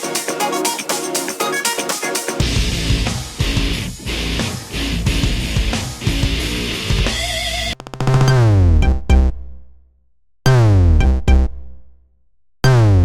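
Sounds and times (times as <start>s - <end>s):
electronic synth ringtone: 0.0s - 2.4s
busy rock-like ringtone: 0.0s - 2.8s.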